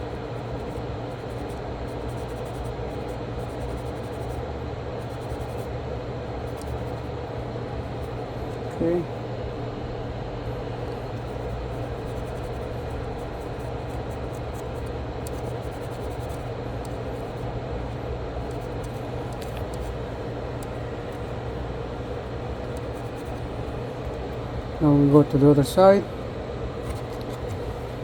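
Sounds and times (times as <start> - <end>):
workbench machine hum: 5.9 - 28.0.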